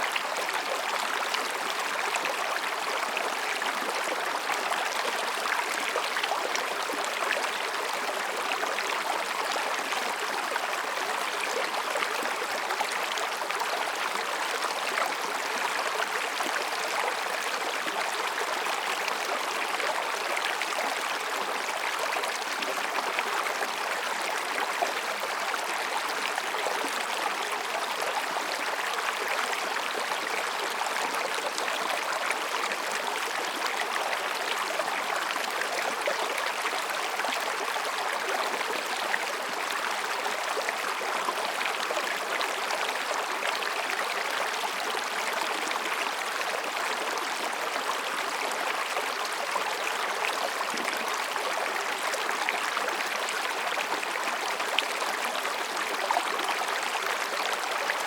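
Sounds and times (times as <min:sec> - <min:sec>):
stream babbling over rocks: 0:00.0 - 0:58.0.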